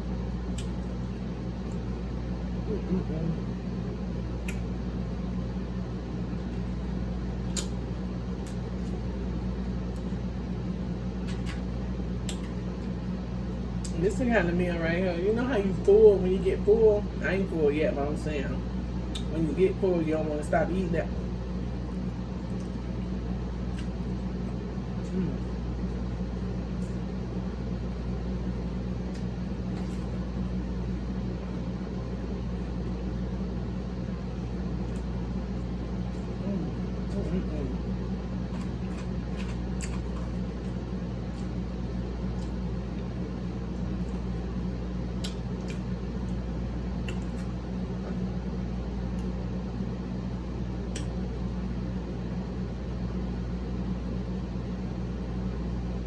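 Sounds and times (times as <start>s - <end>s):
fan humming: 0.0s - 56.0s
person chewing: 23.6s - 26.0s, 38.2s - 41.6s, 46.9s - 48.2s.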